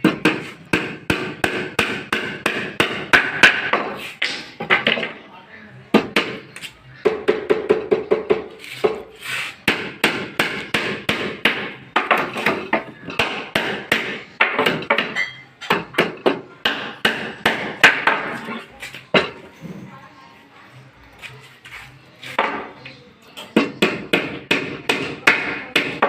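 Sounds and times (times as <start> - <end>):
hammer striking wood: 0.0 - 5.1, 5.9 - 6.4, 9.6 - 18.4, 23.6 - 26.0.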